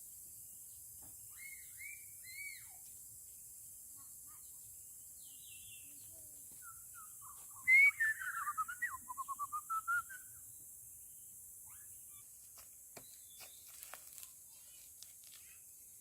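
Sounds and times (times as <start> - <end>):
bird singing: 0.3 - 2.9, 4.7 - 10.5, 13.0 - 13.8.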